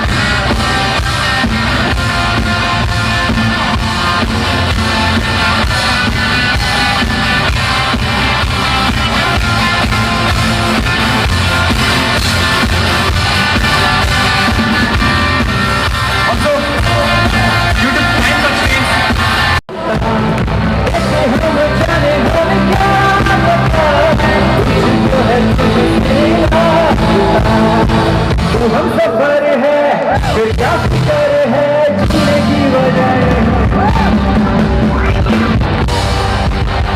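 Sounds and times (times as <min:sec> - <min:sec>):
live rock band playing: 0:00.0 - 0:36.9
person singing: 0:16.2 - 0:36.9.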